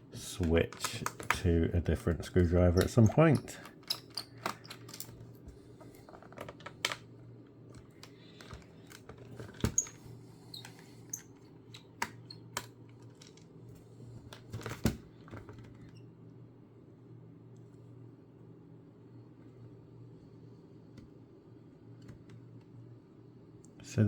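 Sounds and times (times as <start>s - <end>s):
computer low hum: 0.0s - 24.0s
screwdriver clicking and squeaking: 2.7s - 5.1s, 9.6s - 12.7s.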